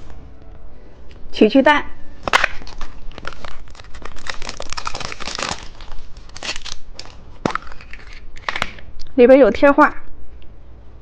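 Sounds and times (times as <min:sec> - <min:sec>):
plastic wrapper crinkling and tearing: 0:02.2 - 0:08.8.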